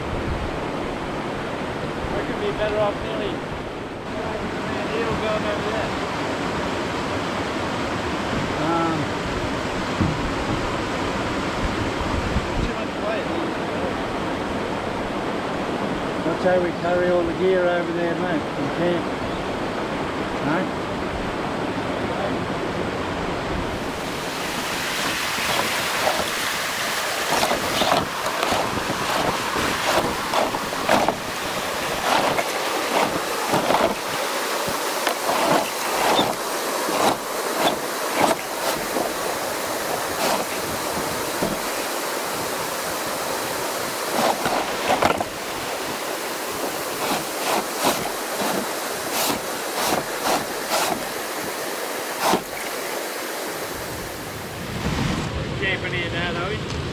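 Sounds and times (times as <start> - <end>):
river rushing over rapids: 23.6 - 54.6
water splashes: 23.6 - 54.6.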